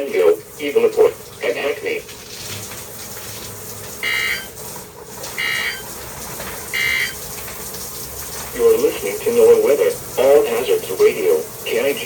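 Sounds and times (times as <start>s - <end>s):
faint radio background: 0.0s - 2.2s, 8.5s - 12.0s
buzzy digital data bursts: 6.8s - 7.2s.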